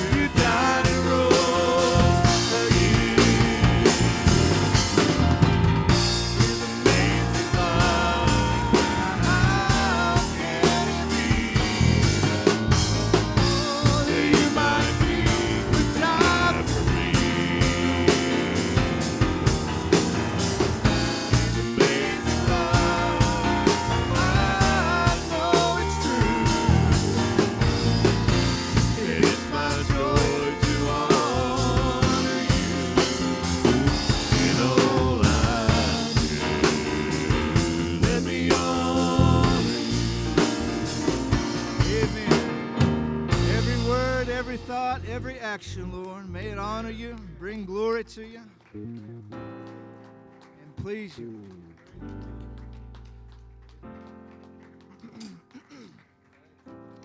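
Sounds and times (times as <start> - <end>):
drum kit beat: 0.0 - 44.7
worship band playing: 0.0 - 57.0.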